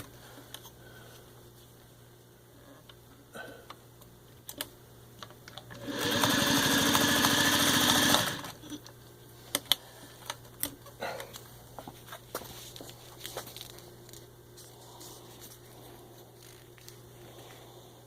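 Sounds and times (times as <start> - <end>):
sewing machine buzzing: 5.7 - 8.6.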